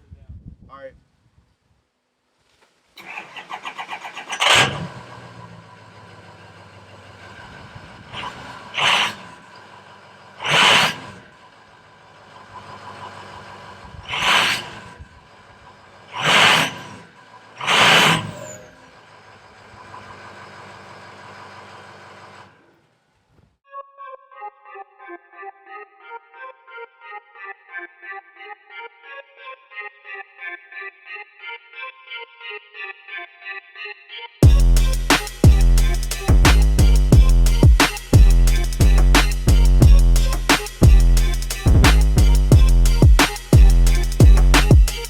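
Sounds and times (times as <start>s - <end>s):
engine revving: 3.0s - 22.7s, 34.4s - 45.0s
diesel engine cranking and idling: 3.0s - 23.0s, 34.4s - 45.0s.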